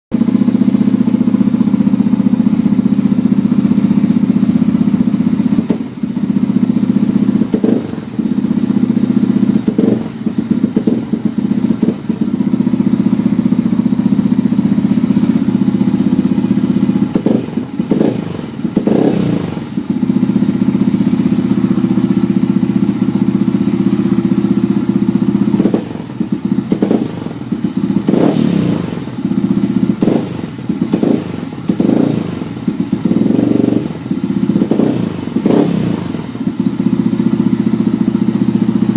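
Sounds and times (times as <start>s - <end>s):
motorcycle engine idling: 0.1s - 38.9s.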